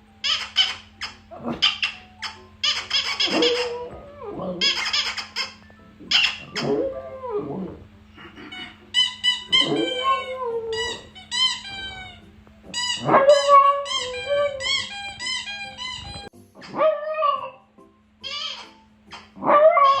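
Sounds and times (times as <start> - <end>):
dog whimpering: 0.8 - 5.1, 6.0 - 12.3, 12.9 - 17.6
dog howling: 3.3 - 4.7, 6.5 - 7.8, 9.6 - 11.1, 13.0 - 14.9, 16.7 - 17.6, 19.4 - 20.0.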